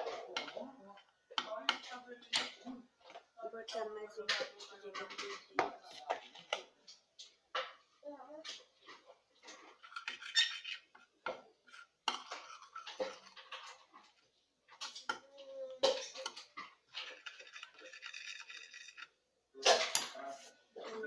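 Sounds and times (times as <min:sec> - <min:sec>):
utensil scraping a dish: 0:08.8 - 0:19.2
slime squeaking: 0:09.9 - 0:10.9.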